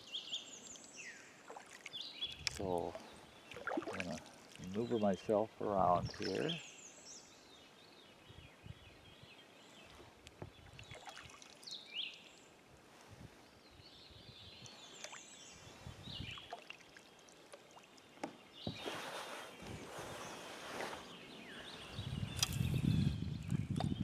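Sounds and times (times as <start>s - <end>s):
water pouring off paddle: 3.5s - 4.8s.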